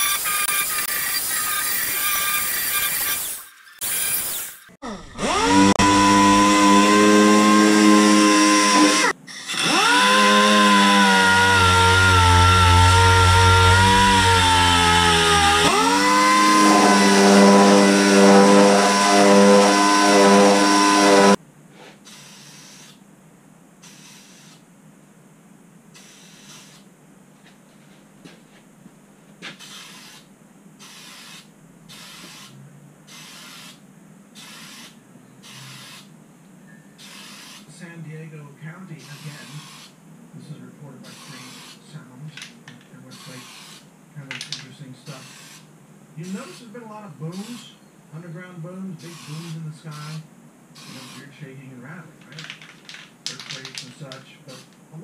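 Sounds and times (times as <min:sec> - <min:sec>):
grinder whining on metal: 0:00.0 - 0:21.4
short hissing bursts: 0:22.0 - 0:23.0, 0:23.8 - 0:24.6, 0:26.0 - 0:26.9, 0:29.6 - 0:36.1, 0:37.0 - 0:37.7.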